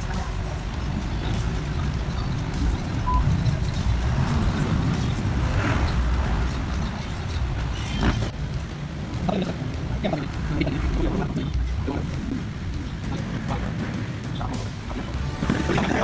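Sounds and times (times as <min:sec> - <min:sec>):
motor vehicle rumble: 0:00.0 - 0:16.0
short beep: 0:03.1 - 0:03.3.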